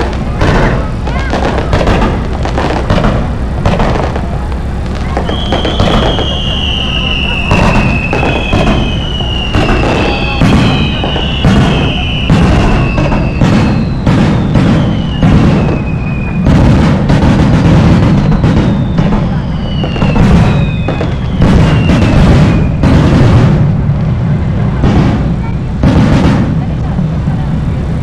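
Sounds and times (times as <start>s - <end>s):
fireworks bangs: 0.0s - 28.0s
low rumble: 0.0s - 28.0s
whistling shells: 5.1s - 23.0s.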